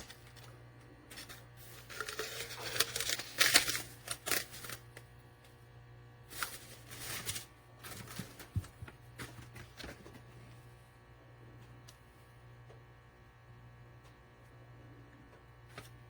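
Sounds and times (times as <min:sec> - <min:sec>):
objects being handled: 0:00.0 - 0:04.9
steady low hum: 0:00.0 - 0:16.0.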